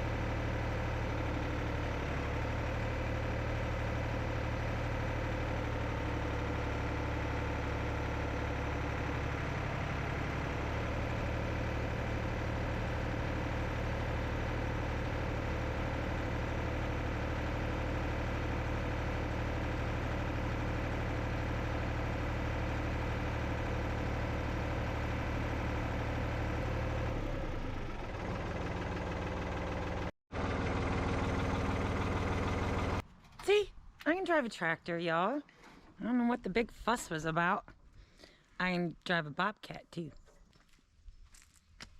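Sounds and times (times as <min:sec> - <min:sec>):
tractor engine running: 0:00.0 - 0:38.3.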